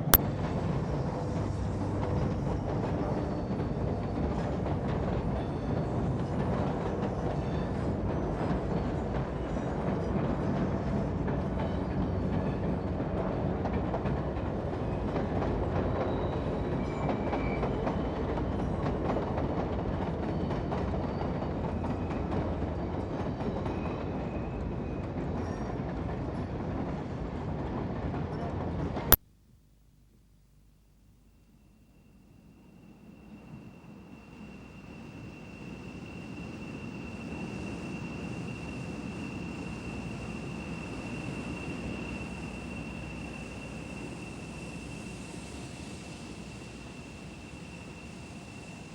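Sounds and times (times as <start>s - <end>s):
train rumbling on rails: 34.0s - 48.9s.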